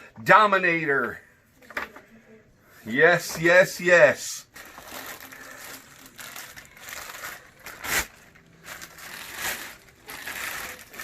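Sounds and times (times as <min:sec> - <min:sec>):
plastic bag crinkling: 0:04.4 - 0:11.0.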